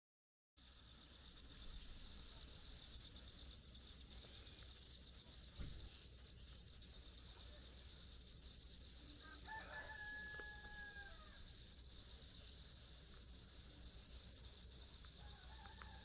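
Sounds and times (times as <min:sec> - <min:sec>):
faint high-pitched hiss: 0:00.6 - 0:16.0
faint rooster crowing: 0:09.2 - 0:11.5, 0:15.2 - 0:16.0.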